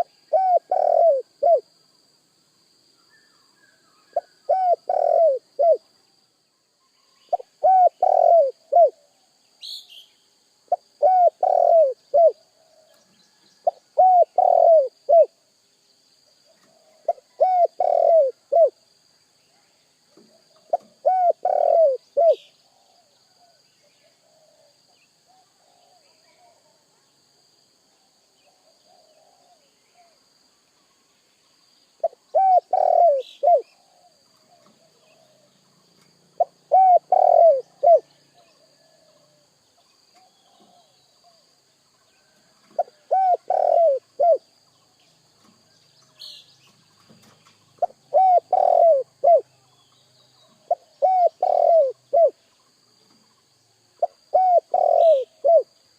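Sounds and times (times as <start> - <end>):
dove cooing: 0.0 - 1.7, 4.1 - 5.8, 7.3 - 9.1, 10.7 - 13.0, 13.6 - 15.4, 16.6 - 18.8, 20.3 - 23.6, 28.5 - 30.2, 32.0 - 35.5, 36.4 - 39.4, 42.4 - 44.5, 47.8 - 49.5, 50.4 - 52.4, 54.0 - 55.7.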